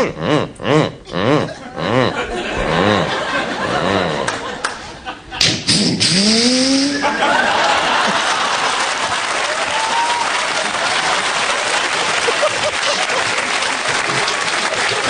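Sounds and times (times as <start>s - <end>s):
audience applauding: 4.2s - 4.8s, 7.0s - 15.0s.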